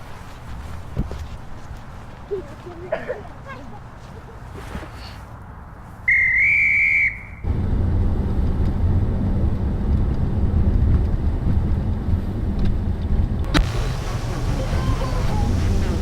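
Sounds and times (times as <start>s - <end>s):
shrill whistle blast: 6.1s - 7.5s, 13.4s - 16.0s
steady low rumble: 7.5s - 16.0s.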